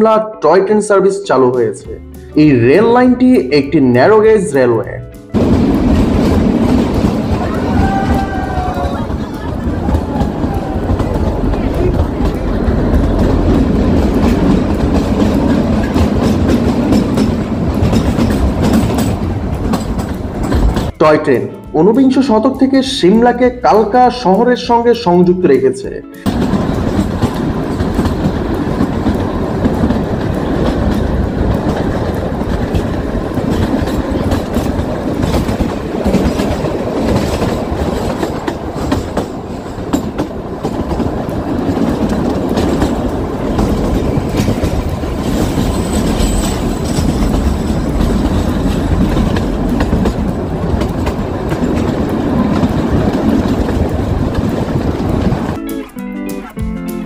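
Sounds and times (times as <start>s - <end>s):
train rumble: 1.4s - 25.0s, 25.9s - 56.6s
train wheels clickety-clack: 1.5s - 21.0s, 26.1s - 57.0s.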